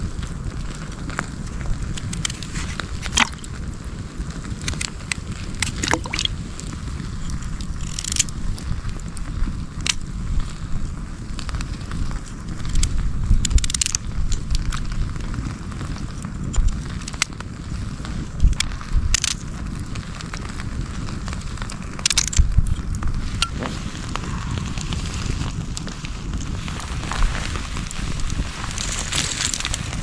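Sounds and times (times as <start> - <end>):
campfire crackling: 0.0 - 30.0
wind rumble on microphone: 0.0 - 30.0
sharp pops and clicks: 1.3 - 10.2, 12.6 - 15.0, 16.3 - 17.5, 18.4 - 19.7, 21.1 - 30.0.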